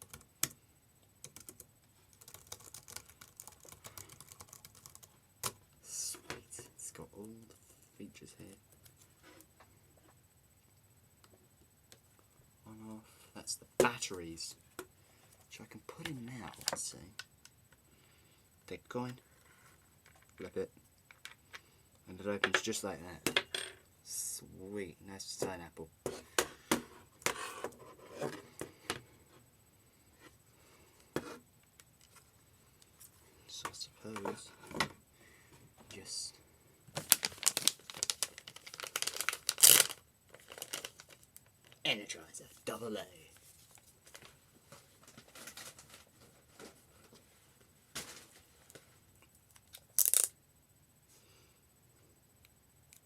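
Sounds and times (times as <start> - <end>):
packaging tearing: 37.0 - 41.2, 49.7 - 50.3
packaging rustling and crackling: 37.0 - 41.8.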